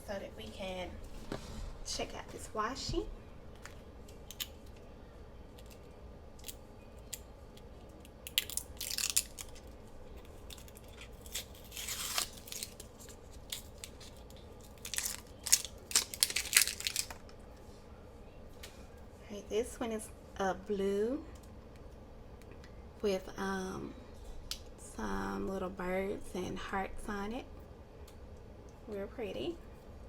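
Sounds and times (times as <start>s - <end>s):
packaging and paper crinkling: 8.4s - 17.4s.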